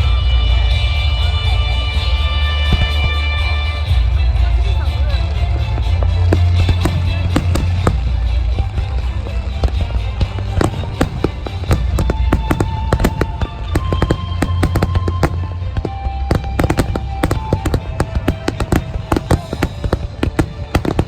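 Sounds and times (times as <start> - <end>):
music of long held notes: 0.0 - 21.0
fireworks crackling: 2.8 - 21.0
fireworks booming: 5.3 - 21.0.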